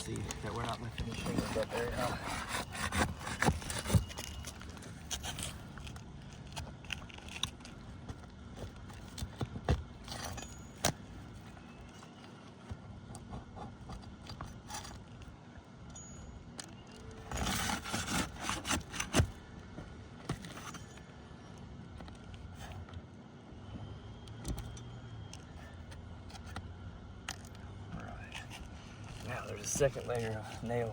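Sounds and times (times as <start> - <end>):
tool scraping roof shingles: 0.1 - 5.9.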